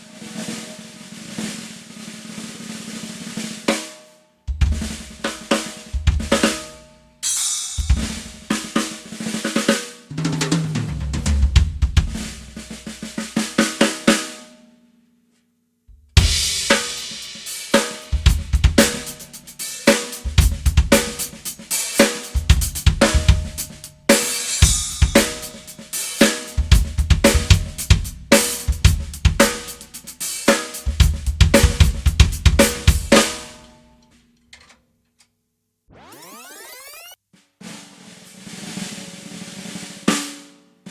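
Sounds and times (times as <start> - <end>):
cymbals: 16.2 - 26.6
hi-hat: 16.4 - 22.9, 27.8 - 30.5.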